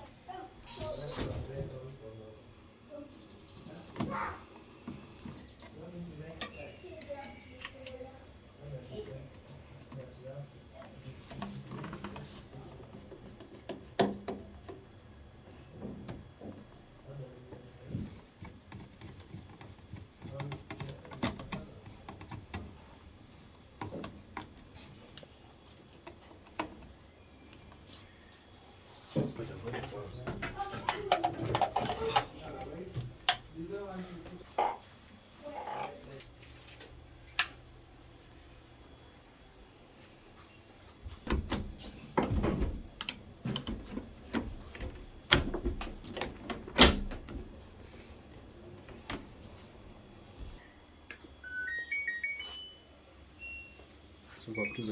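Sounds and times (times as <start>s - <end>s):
hard parts knocking and clattering: 29.6s - 32.7s.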